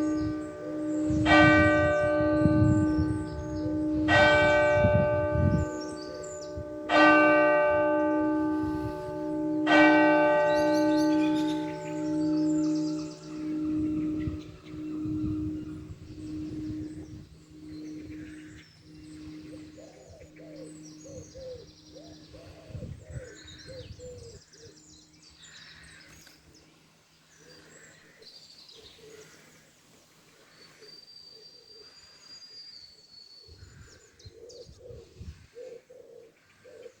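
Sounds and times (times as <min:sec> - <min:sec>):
pigeons cooing: 0:00.0 - 0:24.3, 0:34.3 - 0:37.0
small birds chirping: 0:00.0 - 0:37.0.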